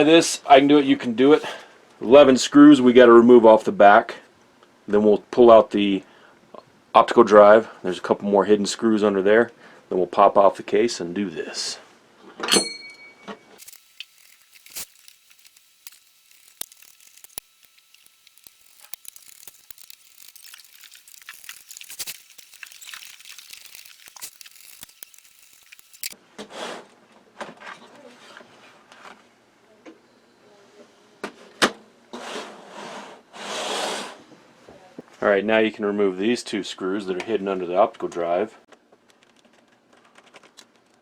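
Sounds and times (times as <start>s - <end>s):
plastic parts rustling: 13.6s - 26.2s, 39.0s - 41.0s
screwdriver removing small screws: 13.6s - 26.2s.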